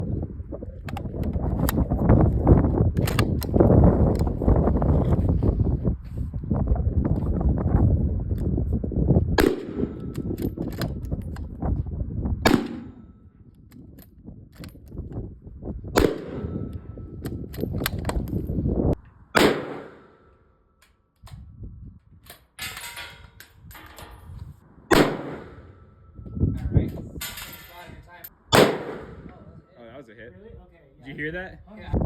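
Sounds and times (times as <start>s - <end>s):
rifle shots echoing: 9.4s - 10.2s, 12.5s - 13.1s, 16.0s - 16.8s, 19.4s - 20.3s, 24.9s - 25.8s, 28.5s - 29.3s.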